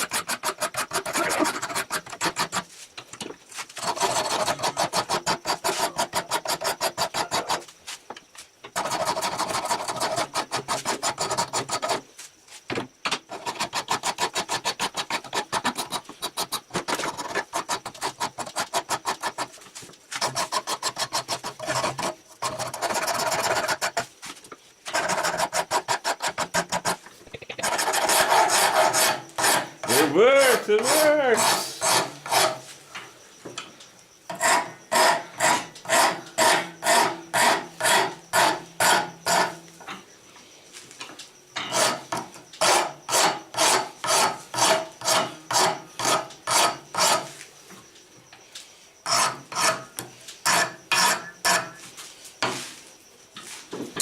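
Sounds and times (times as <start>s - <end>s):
wood file rasping: 0.0s - 2.8s, 3.8s - 7.7s, 8.8s - 12.0s, 13.3s - 24.1s, 24.9s - 27.0s, 27.6s - 32.7s, 34.3s - 39.6s, 41.7s - 47.4s, 49.0s - 51.8s.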